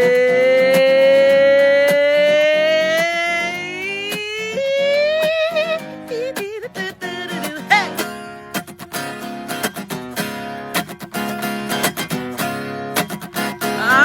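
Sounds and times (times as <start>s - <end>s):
wordless singing with vibrato: 0.0s - 8.3s, 13.6s - 14.0s
acoustic guitar strumming: 0.0s - 14.0s.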